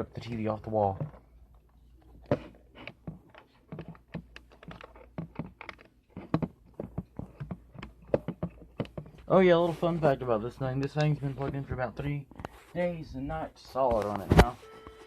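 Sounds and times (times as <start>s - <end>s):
small objects clicking and knocking: 2.0s - 9.3s.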